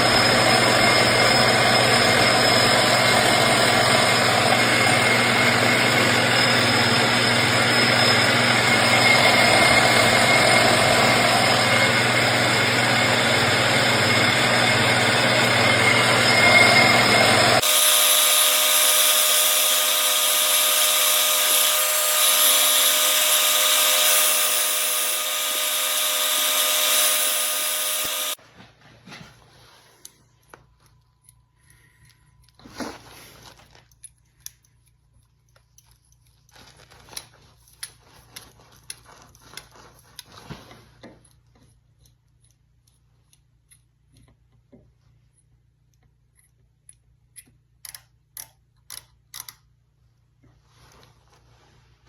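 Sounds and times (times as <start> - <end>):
metal lathe running: 0.0 - 28.4
faint clicks and handling sounds: 29.8 - 51.9.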